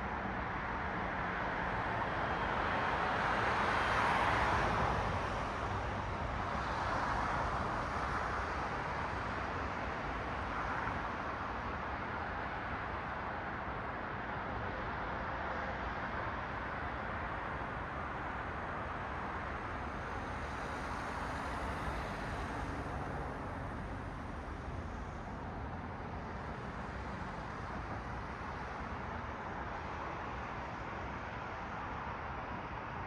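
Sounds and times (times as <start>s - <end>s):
background traffic noise: 0.0s - 33.0s.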